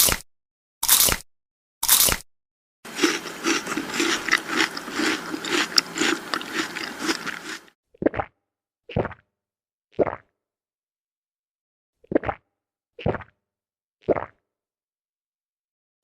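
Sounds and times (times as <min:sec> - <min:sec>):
short crunch: 0:02.9 - 0:07.7.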